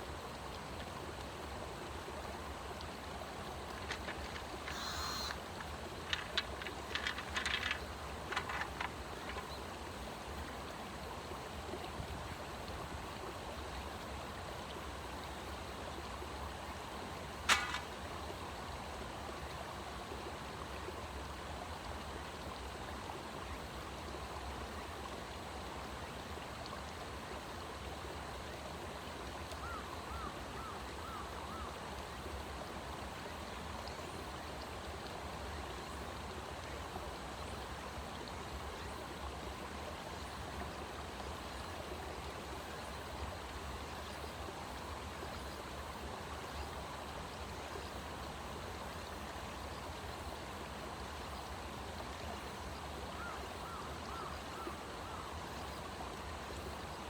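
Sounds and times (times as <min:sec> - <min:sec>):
stream rushing: 0:00.0 - 0:14.6
sharp click: 0:17.5 - 0:18.0.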